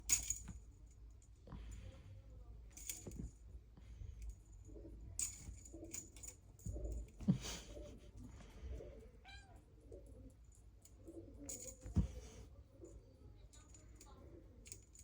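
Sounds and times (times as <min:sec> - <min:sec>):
small metallic jingles: 0:04.2 - 0:07.2.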